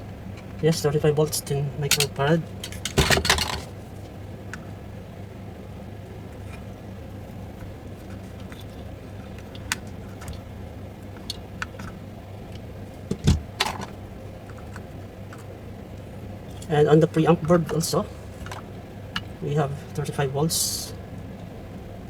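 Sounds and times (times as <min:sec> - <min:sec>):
small parts and tools tapping: 0:01.9 - 0:03.7.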